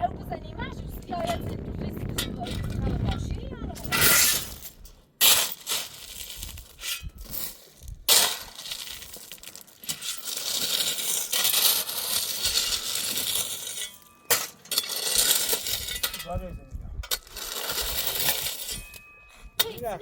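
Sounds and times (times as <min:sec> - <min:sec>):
pebbles pouring and rattling: 0:05.6 - 0:14.0.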